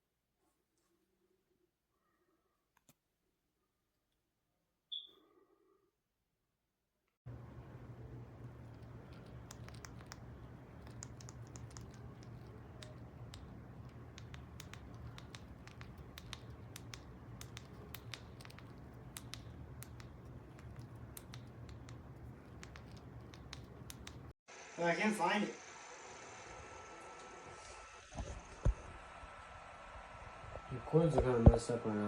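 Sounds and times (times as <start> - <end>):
steady low hum: 7.3 - 24.4
computer keyboard typing: 8.4 - 24.3.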